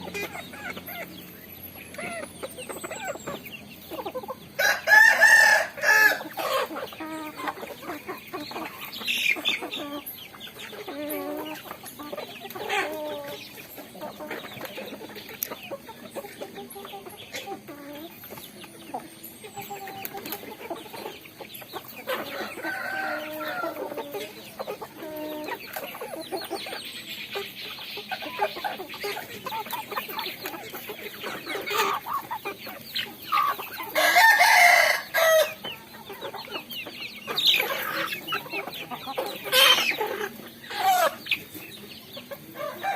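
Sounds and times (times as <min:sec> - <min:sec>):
chickens clucking: 0:00.0 - 0:42.9
rooster crowing: 0:04.6 - 0:06.3, 0:22.3 - 0:23.9, 0:34.0 - 0:35.6.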